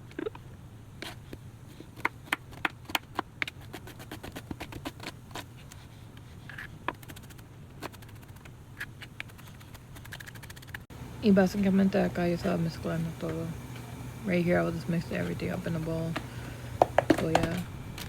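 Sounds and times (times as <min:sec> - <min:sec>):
knife chopping on cutting board: 0:16.8 - 0:17.6.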